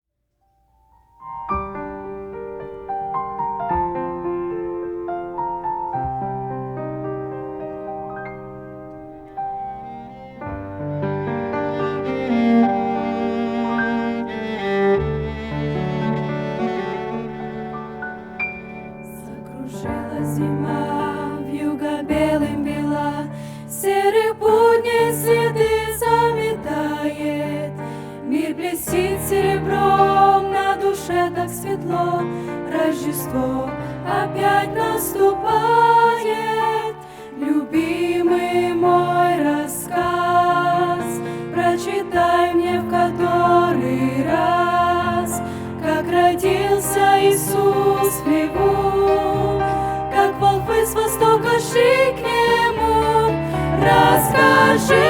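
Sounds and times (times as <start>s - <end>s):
slow gentle piano melody: 0.5s - 55.0s
instrumental accompaniment: 1.2s - 21.3s, 47.0s - 55.0s
group of singers: 19.0s - 55.0s.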